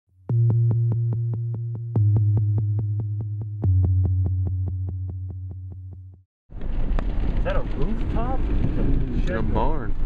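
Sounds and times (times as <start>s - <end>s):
synthesizer bass notes: 0.2s - 6.2s.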